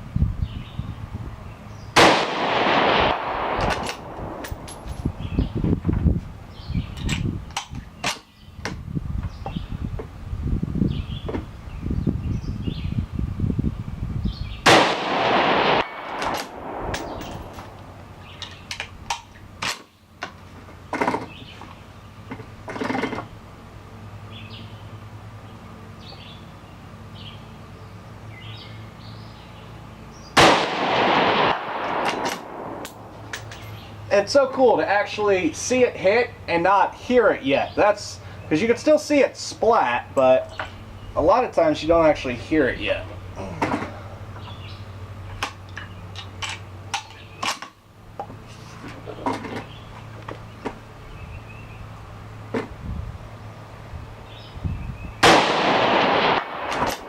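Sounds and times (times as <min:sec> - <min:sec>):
steady low hum: 0:00.0 - 0:57.0
rifle shot with echo: 0:02.0 - 0:04.7, 0:14.6 - 0:18.1, 0:30.4 - 0:33.1, 0:55.2 - 0:57.0.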